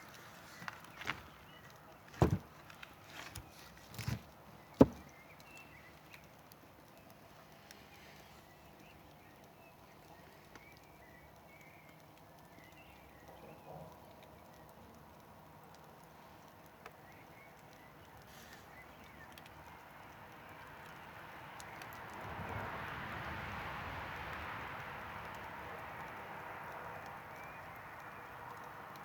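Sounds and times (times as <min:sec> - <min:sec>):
campfire wood crackling: 0:00.0 - 0:29.0.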